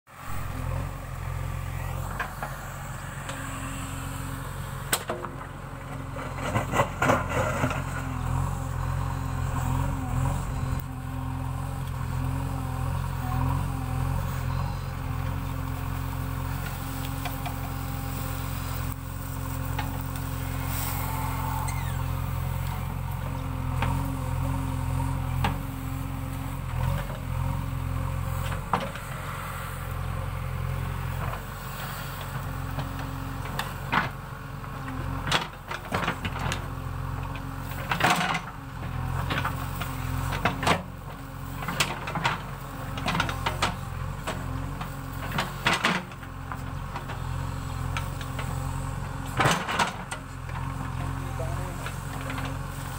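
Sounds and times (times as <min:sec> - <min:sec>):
diesel engine running: 0:00.1 - 0:52.9.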